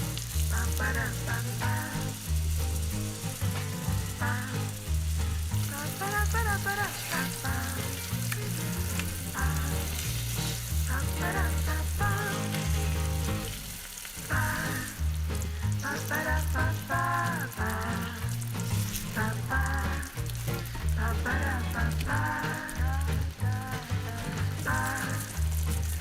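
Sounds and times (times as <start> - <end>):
background music: 0.0 - 26.0
food sizzling in a frying pan: 0.0 - 26.0.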